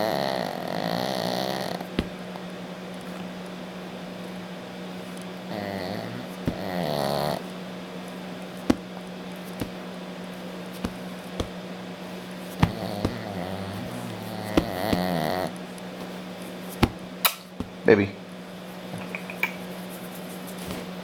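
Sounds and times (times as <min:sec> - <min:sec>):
dog snoring: 0:00.0 - 0:02.1, 0:05.4 - 0:07.5, 0:12.4 - 0:15.6
steady low hum: 0:00.0 - 0:21.0.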